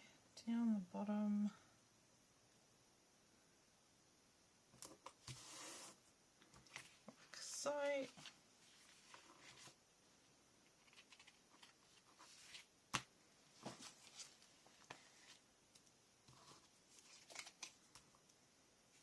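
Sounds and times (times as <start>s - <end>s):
paper and card rustling: 6.6s - 9.8s, 10.7s - 13.0s, 16.3s - 18.0s.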